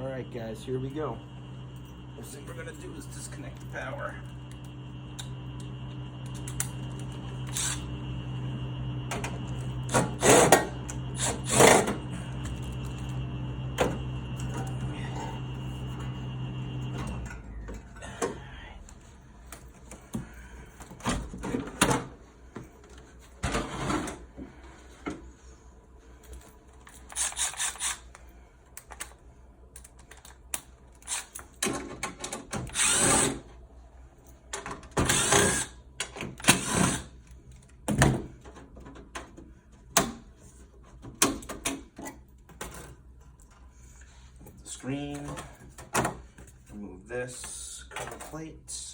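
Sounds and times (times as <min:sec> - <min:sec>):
power drill running: 0:00.0 - 0:18.2, 0:27.0 - 0:28.1, 0:31.0 - 0:31.4, 0:32.6 - 0:33.5, 0:35.0 - 0:37.2
heat pump humming and whining: 0:00.0 - 0:48.9.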